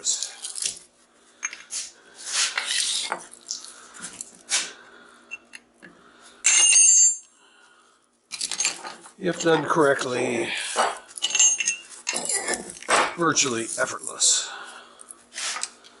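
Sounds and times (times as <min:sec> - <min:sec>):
metal scraping and clinking: 0:08.3 - 0:14.4.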